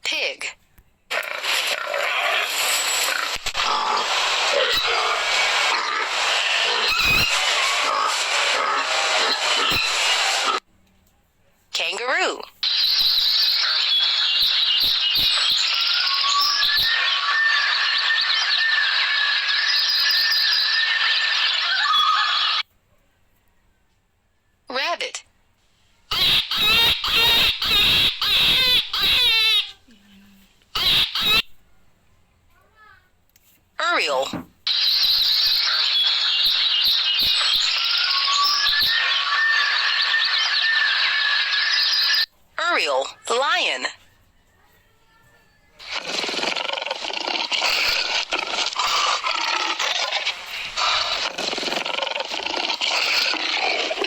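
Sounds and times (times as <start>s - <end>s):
birds chirping and whistling: 12.6s - 22.6s, 34.7s - 42.3s.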